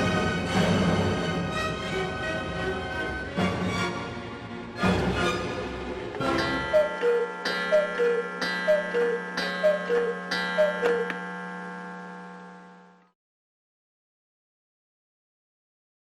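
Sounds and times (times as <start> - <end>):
cuckoo clock calls: 6.2 - 12.8
clock gong strikes: 6.2 - 13.0.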